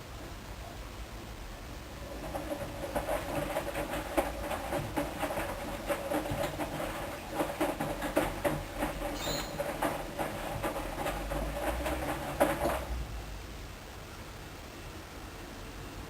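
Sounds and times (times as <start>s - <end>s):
washing machine motor hum: 0.4s - 13.5s
laundry knocking in tumbling drum: 2.0s - 13.0s.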